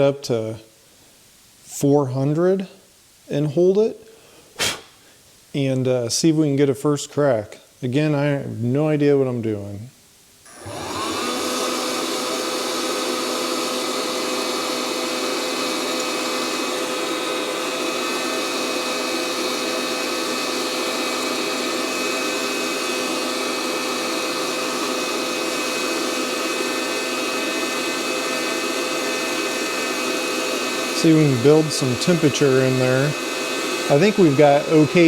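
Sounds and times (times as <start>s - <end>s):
coffee roaster fan rushing air: 10.5s - 35.0s.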